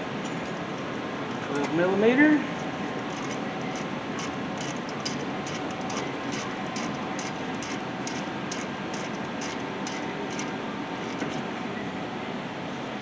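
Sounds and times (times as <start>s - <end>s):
ratchet clicking: 3.1s - 10.5s.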